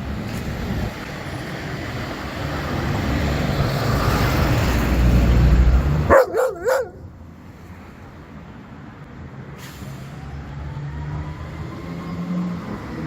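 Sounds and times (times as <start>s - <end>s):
dog yelping: 6.1s - 7.1s.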